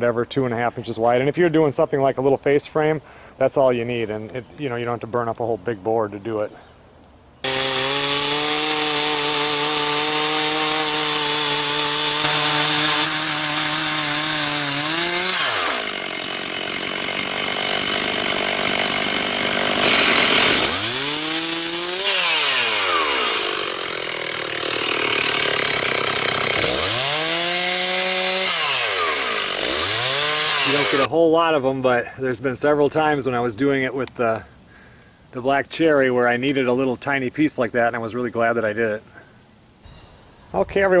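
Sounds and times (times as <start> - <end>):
chainsaw ripping wood: 7.4 - 31.1.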